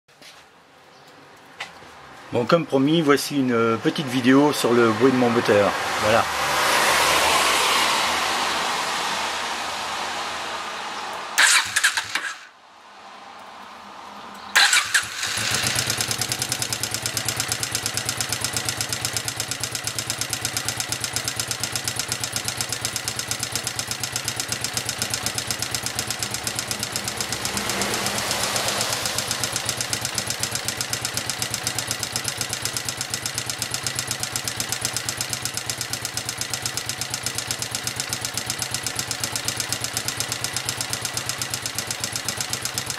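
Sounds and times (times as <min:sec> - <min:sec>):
engine cranking: 0:11.4 - 0:12.5, 0:14.6 - 0:42.9
engine idling with rapid ticking: 0:14.6 - 0:42.9.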